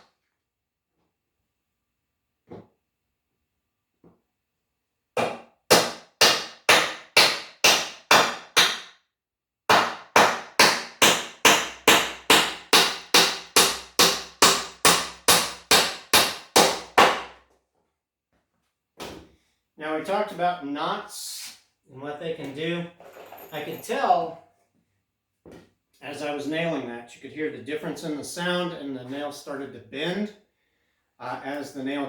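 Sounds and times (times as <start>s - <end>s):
hammer driving nails into wood: 5.2s - 9.0s, 9.7s - 17.4s.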